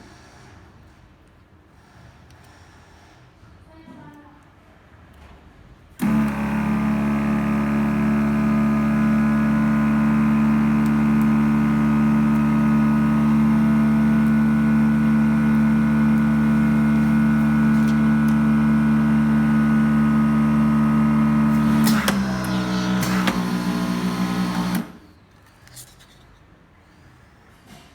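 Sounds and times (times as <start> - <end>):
pump humming: 6.0 - 25.2
machine click: 21.5 - 25.0.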